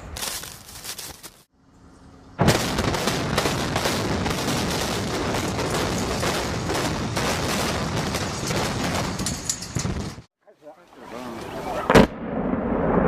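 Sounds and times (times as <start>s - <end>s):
demolition charges exploding: 2.4s - 10.3s.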